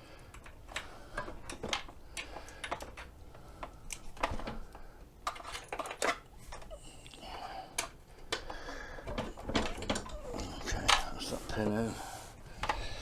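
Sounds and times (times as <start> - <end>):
light clicks and taps of parts: 0.2 - 6.7.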